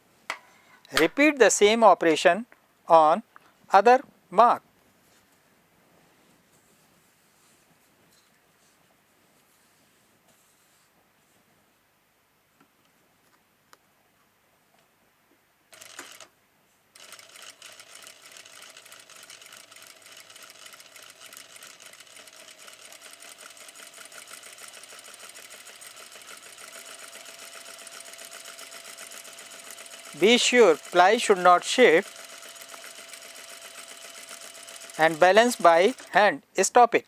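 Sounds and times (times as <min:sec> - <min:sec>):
sewing machine stitching: 0:15.7 - 0:16.3, 0:17.0 - 0:36.4.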